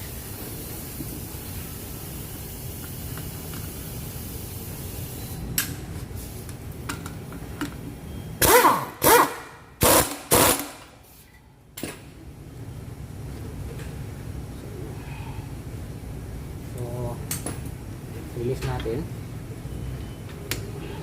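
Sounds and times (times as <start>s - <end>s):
impact wrench bursts: 8.4s - 11.0s.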